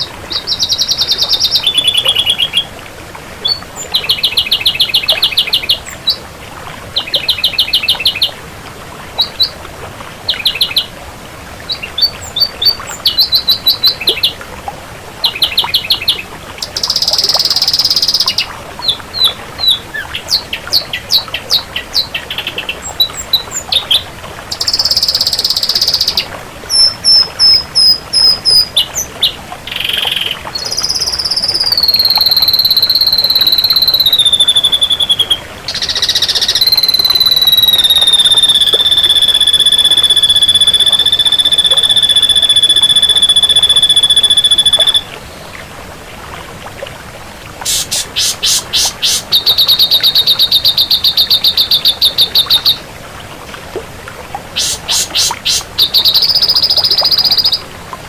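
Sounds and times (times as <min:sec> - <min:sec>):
bird chirps and trills: 0:00.0 - 0:02.7, 0:03.4 - 0:06.2, 0:15.2 - 0:45.1, 0:47.6 - 0:52.8, 0:54.6 - 0:57.6
bird high steady whistle: 0:16.6 - 0:18.4, 0:24.5 - 0:28.8, 0:30.1 - 0:45.1, 0:47.6 - 0:52.8, 0:54.6 - 0:57.6
bird rattling trill: 0:30.8 - 0:45.0, 0:47.6 - 0:51.2, 0:54.6 - 0:57.6.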